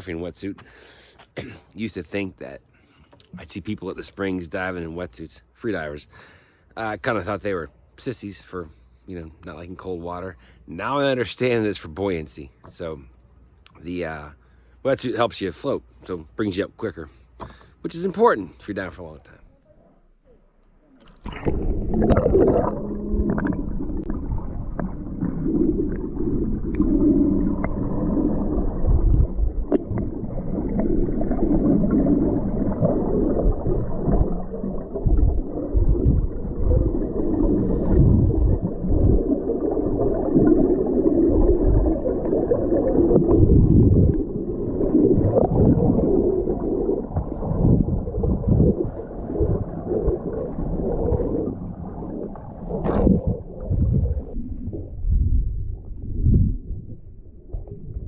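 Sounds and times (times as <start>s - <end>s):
low underwater thumps: 21.0s - 58.0s
underwater gurgling and rushing: 21.0s - 58.0s.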